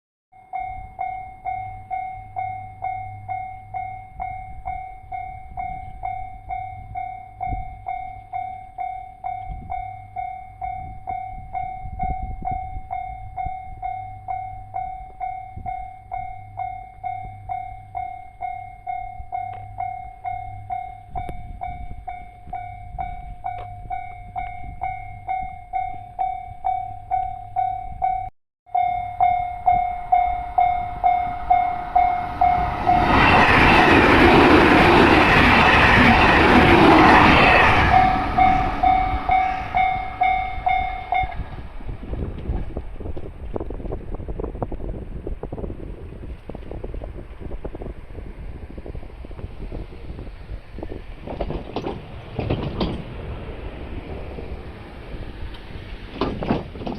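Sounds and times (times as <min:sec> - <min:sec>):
level crossing alarm ringing: 0:00.4 - 0:41.6.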